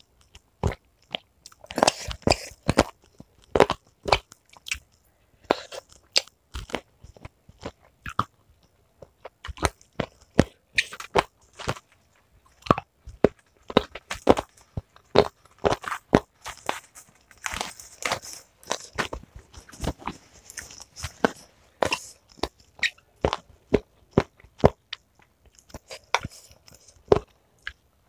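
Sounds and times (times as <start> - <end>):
person chewing crunchy food: 0.0 - 27.9.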